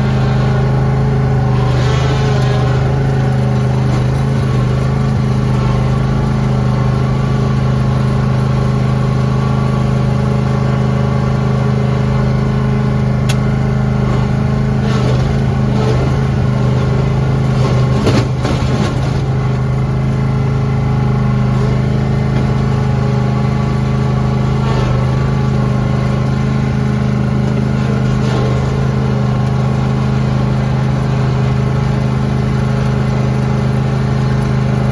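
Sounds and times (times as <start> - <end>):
lawn tractor engine running: 0.0 - 34.9.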